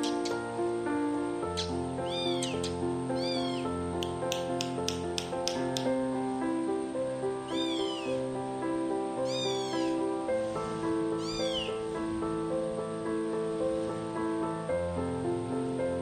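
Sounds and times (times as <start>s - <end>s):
background music sustained notes: 0.0s - 16.0s
kitten meowing: 1.6s - 3.7s, 7.5s - 8.2s, 9.2s - 10.0s, 11.2s - 11.9s.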